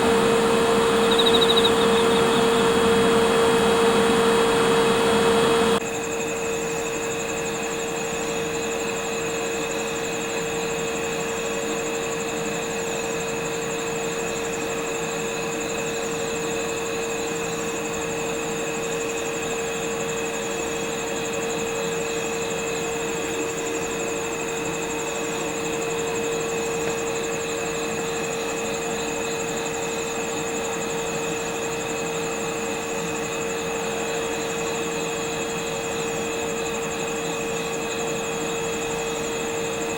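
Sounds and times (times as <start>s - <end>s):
electric locomotive hum: 0.0s - 5.8s
high steady trill: 0.0s - 5.8s.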